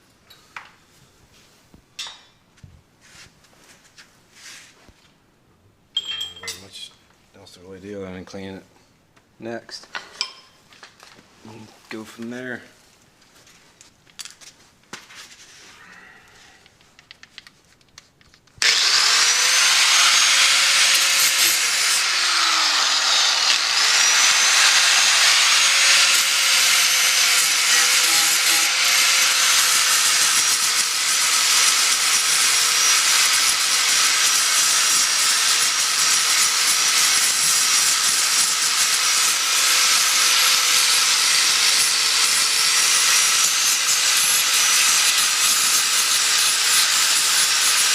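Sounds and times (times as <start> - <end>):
power grinder on metal: 18.6 - 47.9.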